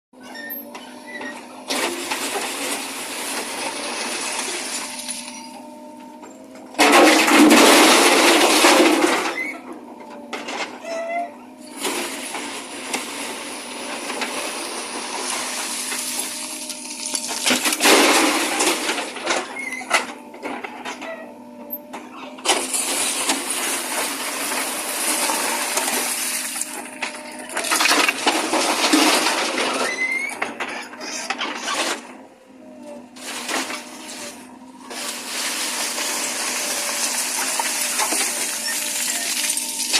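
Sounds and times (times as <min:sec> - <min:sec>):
backhoe loader engine: 0:00.2 - 0:39.9
soil and stones crashing: 0:01.7 - 0:05.4, 0:06.8 - 0:09.4, 0:11.7 - 0:19.5, 0:22.5 - 0:29.9, 0:34.9 - 0:39.9.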